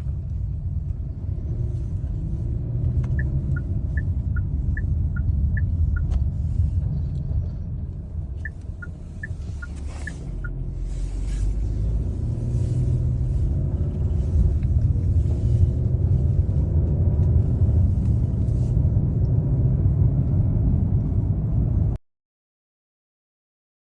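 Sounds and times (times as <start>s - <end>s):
car road rumble: 0.0s - 22.0s
two-tone indicator ticking: 3.1s - 6.1s.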